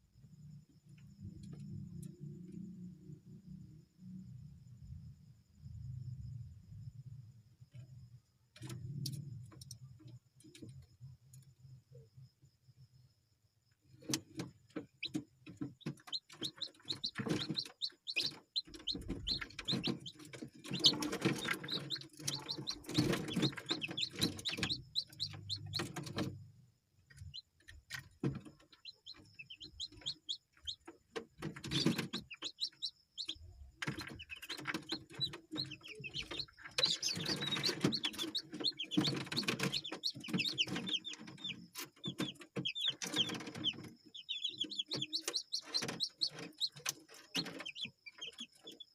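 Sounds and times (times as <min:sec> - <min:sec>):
chickens clucking and chirping: 0:14.0 - 0:48.9.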